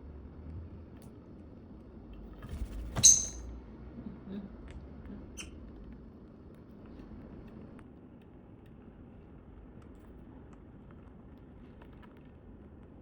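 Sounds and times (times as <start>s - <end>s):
parrot chirp: 3.0s - 3.4s
parrot squeaking: 3.0s - 3.4s.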